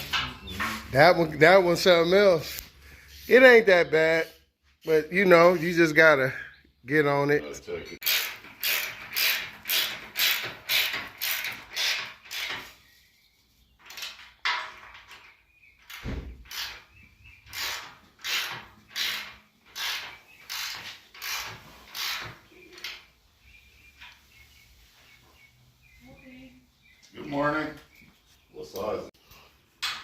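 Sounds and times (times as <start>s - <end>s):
ratchet wrench clicking: 8.0s - 12.6s.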